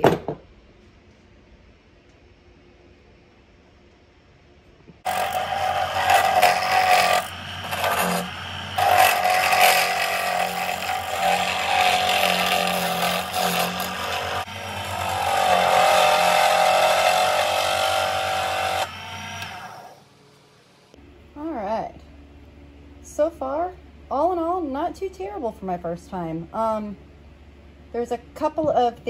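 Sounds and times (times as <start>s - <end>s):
motor hum: 3.0s - 24.6s
small lathe whirring: 5.0s - 20.2s.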